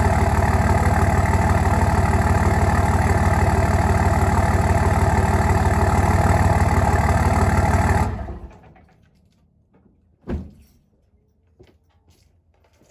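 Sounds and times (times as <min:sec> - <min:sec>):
diesel engine idling: 0:00.0 - 0:08.6
engine shutting off: 0:00.0 - 0:08.8.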